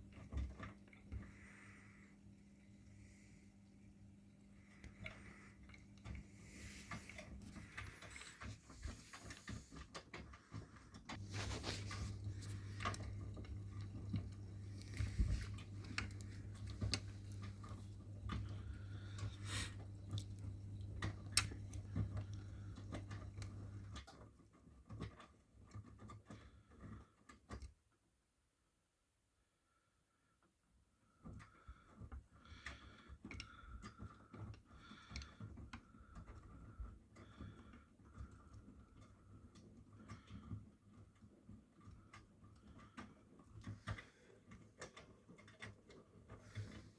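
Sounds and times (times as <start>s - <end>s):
washing machine running: 0.0s - 24.2s
steady low hum: 10.7s - 24.0s.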